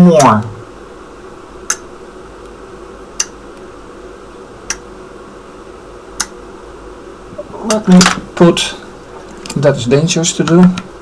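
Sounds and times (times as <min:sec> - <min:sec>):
relays clicking: 0:00.0 - 0:00.5, 0:09.2 - 0:09.8
low electrical hum: 0:00.0 - 0:11.0.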